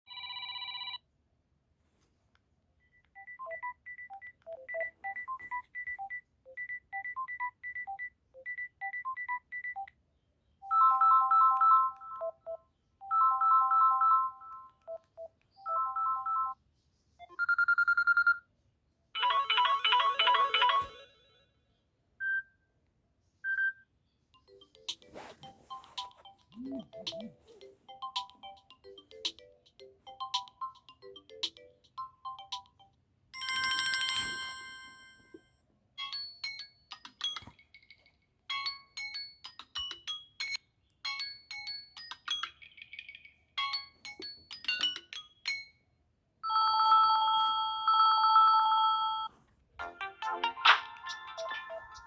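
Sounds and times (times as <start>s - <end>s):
plucked electronic ringtone tune: 19.2s - 21.5s.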